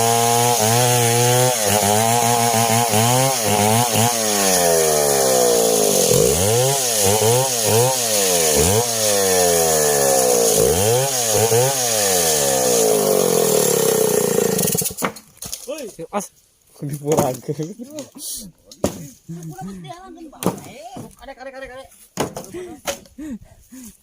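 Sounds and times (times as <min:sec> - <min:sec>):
chainsaws cutting wood: 0:00.0 - 0:15.2.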